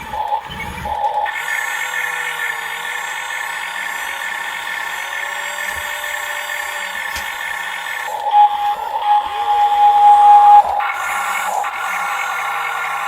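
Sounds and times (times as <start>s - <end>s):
toy vehicle click: 0.0s - 8.9s
electric motor whine: 0.0s - 13.0s.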